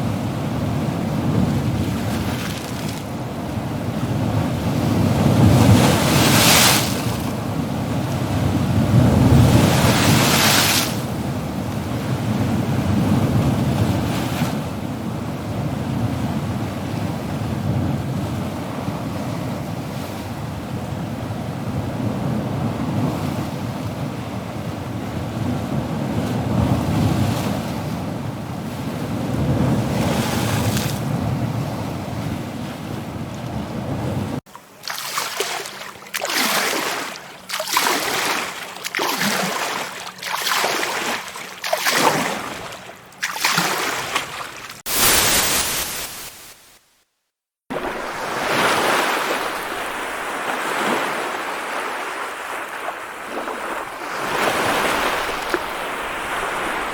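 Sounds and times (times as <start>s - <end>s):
waves breaking and hissing back: 0.0s - 14.8s, 25.4s - 46.8s, 47.7s - 56.9s
steady rumbling surf: 0.0s - 46.8s, 47.7s - 56.9s.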